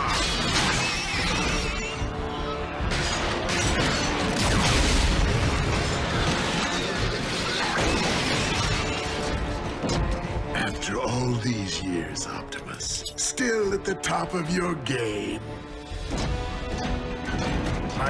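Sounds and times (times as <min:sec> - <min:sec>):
dramatic background music: 0:00.0 - 0:18.0.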